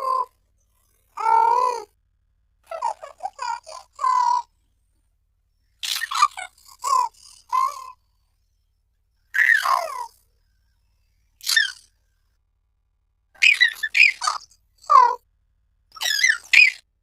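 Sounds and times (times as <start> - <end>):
baby giggling and cooing: 2.7 - 4.5, 5.8 - 8.0.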